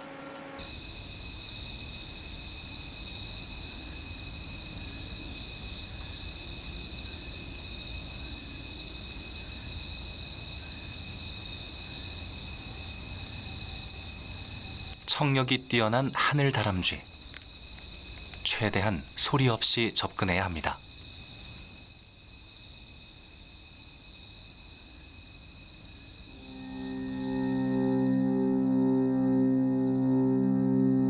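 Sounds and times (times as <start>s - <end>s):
crickets trilling: 0.6s - 31.0s
insect chirp: 0.6s - 31.0s.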